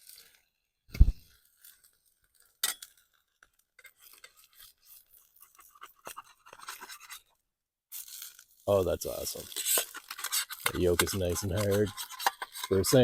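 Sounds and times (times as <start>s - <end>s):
metal flipper scraping frying pan: 3.8s - 7.3s, 9.4s - 13.0s.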